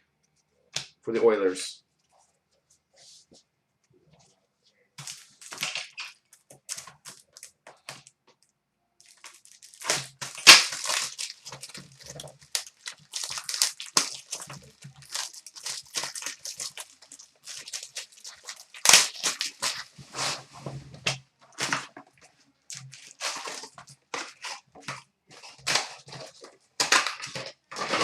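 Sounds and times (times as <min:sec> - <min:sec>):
foil wrappers tearing and crinkling: 0:05.0 - 0:08.1, 0:09.0 - 0:22.0, 0:22.7 - 0:28.0.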